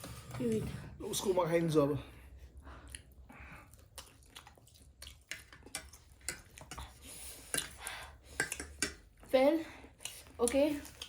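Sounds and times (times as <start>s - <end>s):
chewing noodles: 2.7s - 7.8s, 8.4s - 11.0s.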